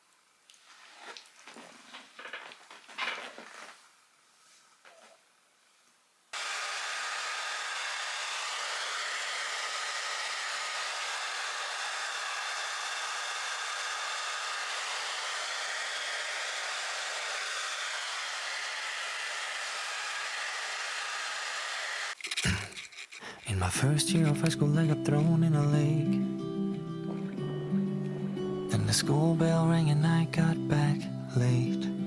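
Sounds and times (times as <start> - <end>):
electric appliance blowing: 6.4 - 22.2.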